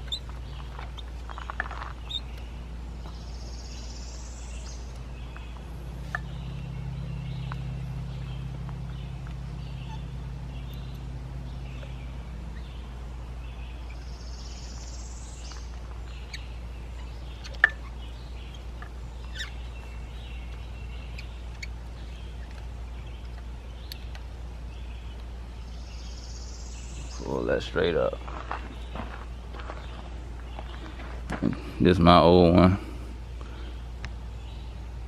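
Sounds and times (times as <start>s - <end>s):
birds chirping: 0.0s - 35.0s
steady low hum: 0.0s - 35.0s
sharp clicks: 20.5s - 24.3s.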